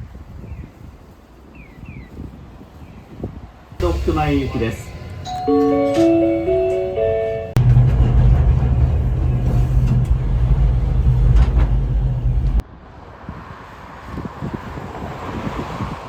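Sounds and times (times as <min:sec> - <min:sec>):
short chime melody: 0:03.8 - 0:07.6
vehicle engine rumbling: 0:03.8 - 0:12.6.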